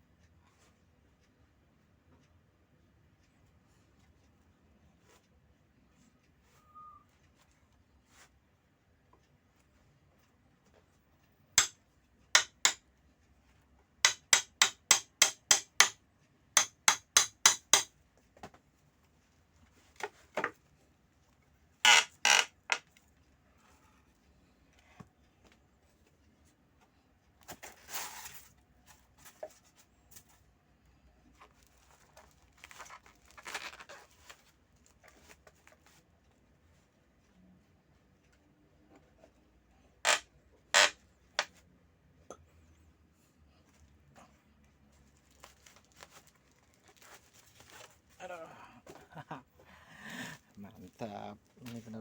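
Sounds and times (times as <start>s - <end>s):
wrapping rustling: 31.5s - 35.8s, 45.1s - 48.2s.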